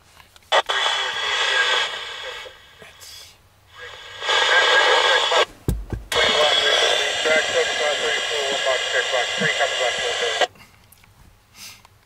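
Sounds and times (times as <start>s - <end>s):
garbled radio voices with static: 0.5s - 10.6s
low thump: 5.6s - 6.1s.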